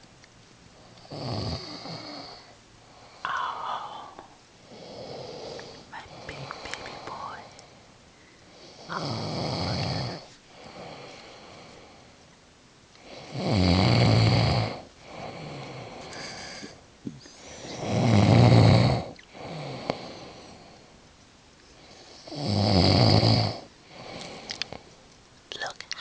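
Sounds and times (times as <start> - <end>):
quiet breathing: 0.7 - 26.0
man snoring: 1.1 - 2.5, 3.2 - 7.4, 8.6 - 12.0, 13.0 - 16.8, 17.4 - 20.7, 22.2 - 24.5.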